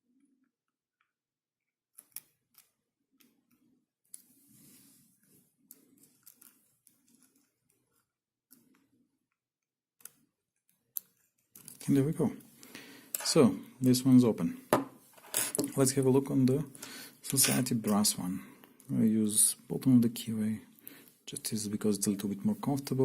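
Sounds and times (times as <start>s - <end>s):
lock pick clicking and scraping: 1.9s - 3.3s.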